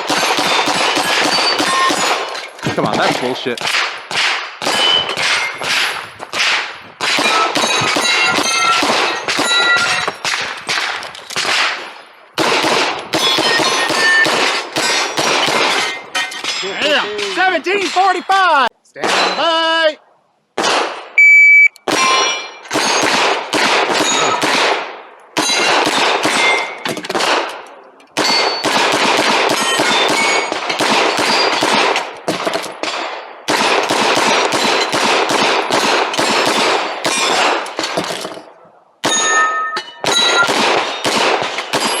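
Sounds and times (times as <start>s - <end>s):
rapid pistol shots: 0.0s - 15.8s, 20.6s - 21.2s, 21.8s - 27.6s, 28.2s - 39.2s, 40.0s - 42.0s
steel plates ringing: 7.2s - 10.2s, 13.2s - 18.4s, 25.4s - 26.8s, 39.0s - 40.5s
shot timer beep: 21.2s - 21.8s.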